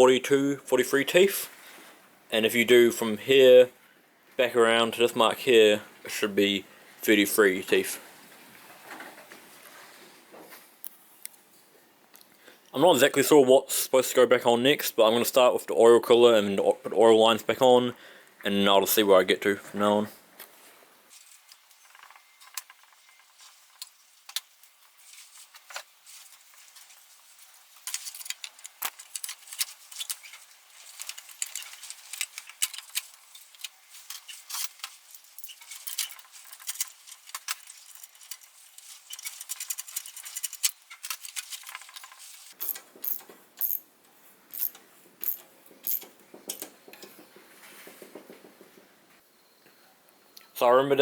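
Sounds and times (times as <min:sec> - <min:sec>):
metal parts clinking: 0:27.9 - 0:43.8, 0:44.5 - 0:46.7.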